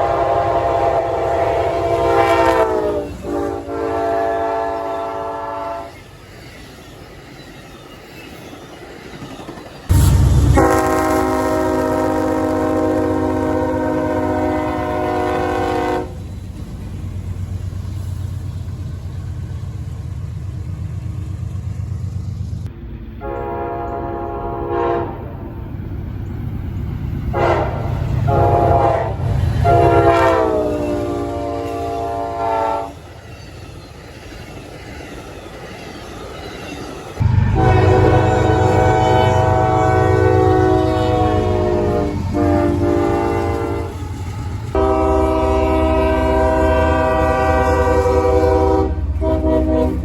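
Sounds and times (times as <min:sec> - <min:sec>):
locomotive air horn blasts: 0:00.0 - 0:06.0, 0:09.9 - 0:16.2, 0:23.2 - 0:25.3, 0:27.3 - 0:33.0, 0:37.2 - 0:50.0
passing train rumble: 0:00.0 - 0:50.0.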